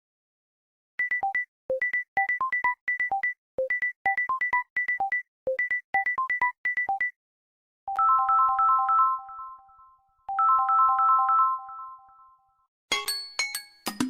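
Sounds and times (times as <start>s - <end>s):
electronic beeping ringtone: 1.0s - 7.2s, 7.9s - 12.6s
chiming ringtone: 7.9s - 13.9s.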